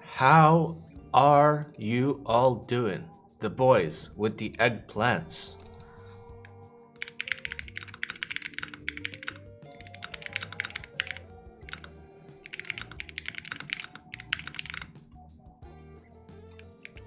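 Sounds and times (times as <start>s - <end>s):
background music: 0.0s - 17.0s
mechanical keyboard typing: 5.5s - 5.9s, 7.0s - 15.0s, 16.5s - 17.0s.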